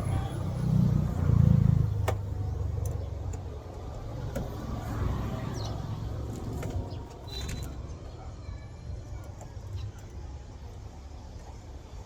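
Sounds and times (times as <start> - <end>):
motor vehicle rumble: 0.0 - 12.0.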